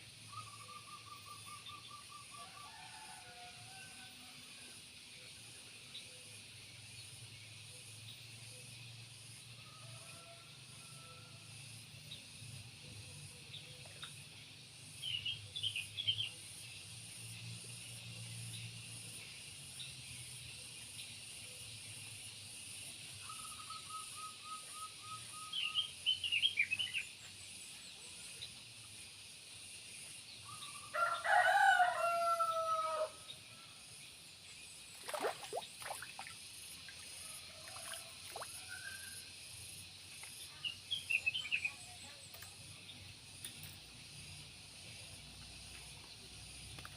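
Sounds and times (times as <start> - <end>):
rooster crowing: 30.9 - 33.2.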